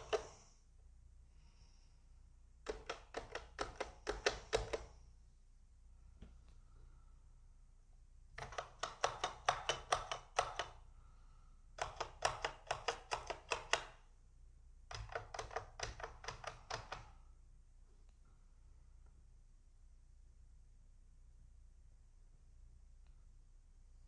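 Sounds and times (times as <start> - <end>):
mechanical keyboard key clicks: 2.6 - 4.9, 8.4 - 10.8, 11.8 - 14.0, 14.9 - 17.1.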